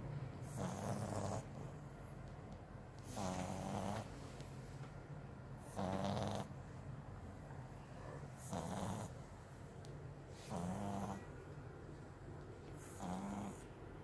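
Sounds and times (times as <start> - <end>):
dog snoring: 0.4 - 1.9, 3.0 - 4.2, 5.6 - 6.6, 8.3 - 9.2, 10.4 - 11.4, 12.8 - 13.7
dog breathing: 0.4 - 2.1, 3.0 - 4.6, 5.6 - 6.8, 7.4 - 9.3, 10.3 - 11.3, 12.8 - 13.7.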